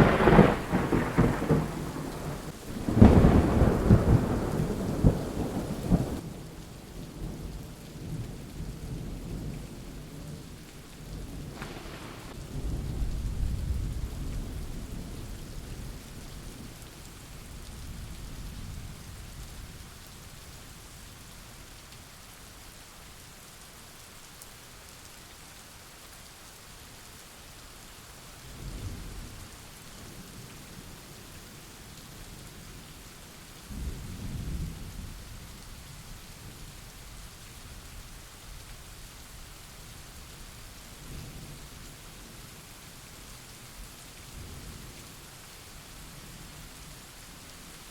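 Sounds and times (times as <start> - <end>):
thunder rumbling: 0.0 - 6.5, 11.0 - 16.8
heavy rain: 0.0 - 47.9.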